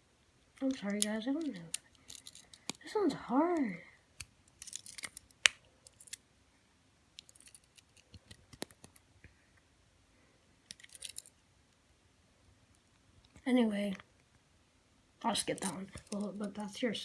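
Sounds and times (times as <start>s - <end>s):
pocketknife tools clicking and scraping: 0.7s - 2.8s, 4.2s - 6.2s, 10.7s - 11.3s, 15.5s - 16.4s.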